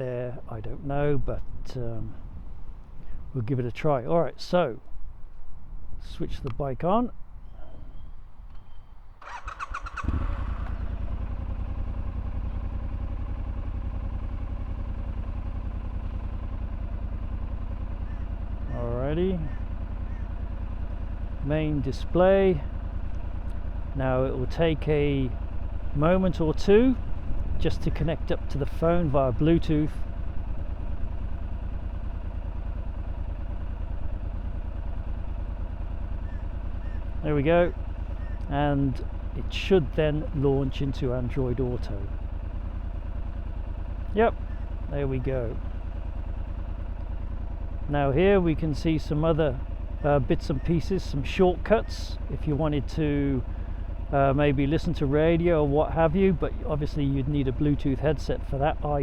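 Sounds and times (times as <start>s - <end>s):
motorcycle engine idling: 7.2s - 59.0s
starter motor cranking: 9.2s - 10.8s.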